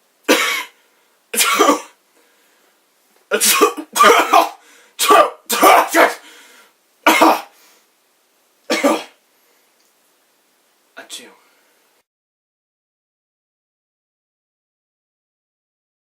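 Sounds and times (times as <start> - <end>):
person sneezing: 0.3 - 0.8, 1.4 - 2.0, 3.3 - 6.3, 7.1 - 7.6, 8.7 - 9.2.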